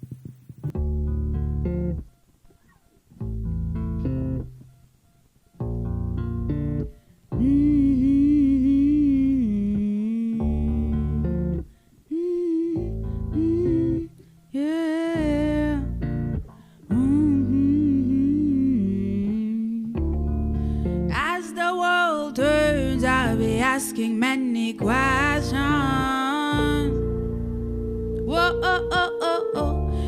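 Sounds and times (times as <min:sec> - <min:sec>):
guitar and bass chords: 0:00.0 - 0:02.1, 0:03.1 - 0:04.8, 0:05.6 - 0:11.8, 0:12.7 - 0:14.3, 0:15.2 - 0:30.0.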